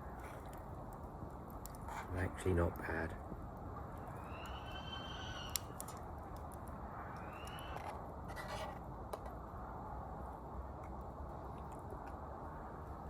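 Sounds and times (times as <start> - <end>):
small crackles and ticks: 0.0 - 4.6, 5.4 - 9.4, 10.7 - 12.3
stove fire hissing: 0.0 - 4.8.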